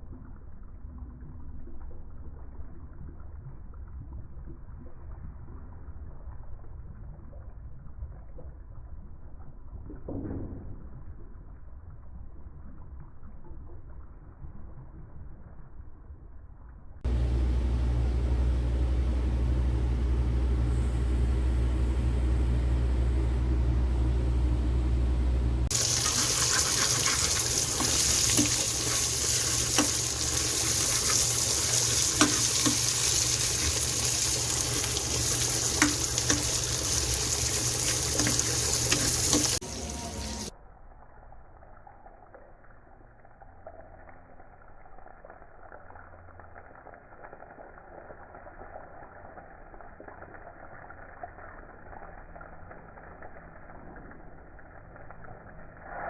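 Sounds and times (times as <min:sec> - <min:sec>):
low hum: 0:10.8 - 0:43.8
cooking hiss with crackles: 0:17.1 - 0:40.5.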